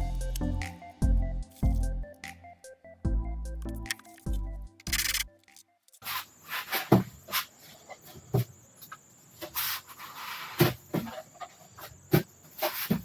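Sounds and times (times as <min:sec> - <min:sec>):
tools clicking and knocking: 0:03.6 - 0:06.0.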